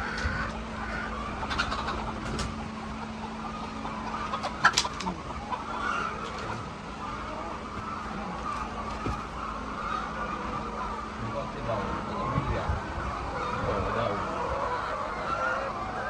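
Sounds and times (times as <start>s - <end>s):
hens clucking: 0.0s - 12.3s, 12.9s - 16.0s
sharp knocks: 7.7s - 9.4s.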